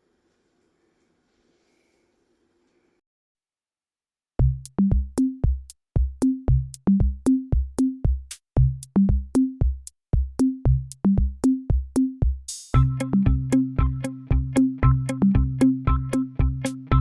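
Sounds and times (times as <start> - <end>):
electronic music: 12.8 - 17.0.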